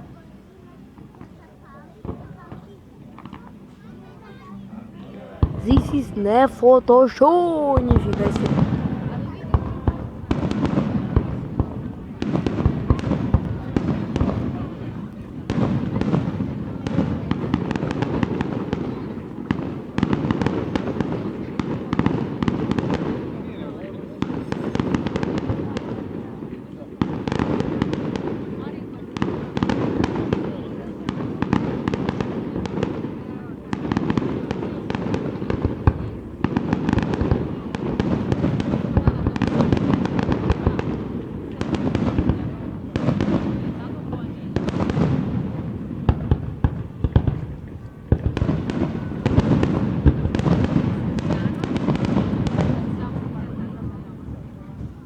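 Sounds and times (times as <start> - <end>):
firework bangs and crackles: 0.0 - 4.6, 5.2 - 55.0.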